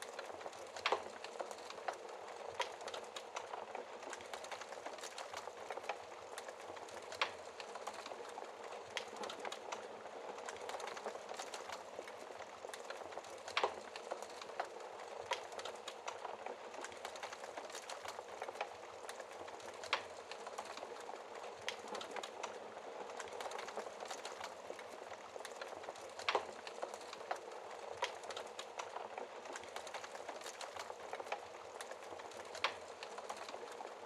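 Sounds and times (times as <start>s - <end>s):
wood fire crackling: 0.0s - 34.0s.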